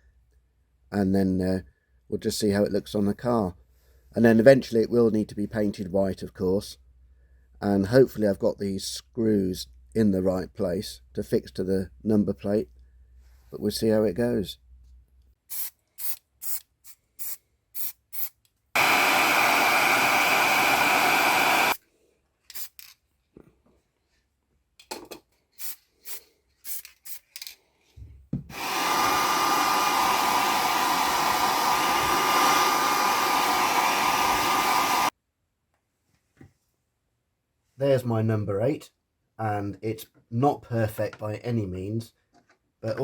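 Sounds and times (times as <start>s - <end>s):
small electric motor whine: 18.8s - 21.8s, 28.5s - 35.1s.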